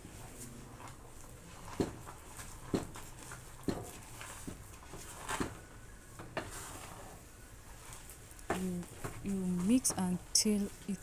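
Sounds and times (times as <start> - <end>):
wooden stick thudding in dough: 1.7 - 6.6.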